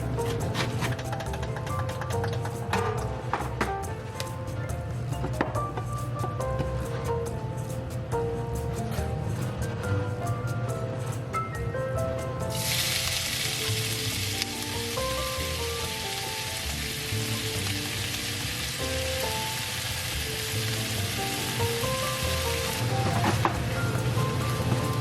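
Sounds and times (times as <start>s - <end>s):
soft background music: 0.0s - 25.0s
food sizzling in a frying pan: 12.5s - 25.0s.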